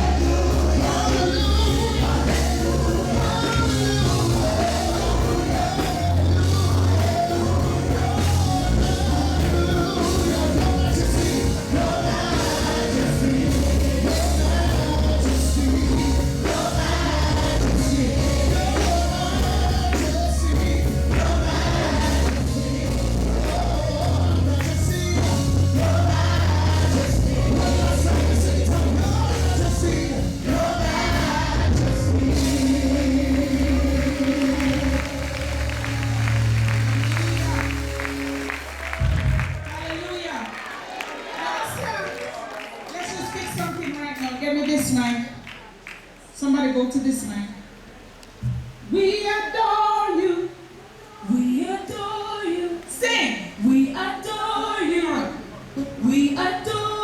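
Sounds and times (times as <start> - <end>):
people singing: 0.0 - 39.3
bass line: 0.0 - 39.8
drums: 0.0 - 39.9, 48.2 - 48.9
live gospel band playing: 0.0 - 57.0.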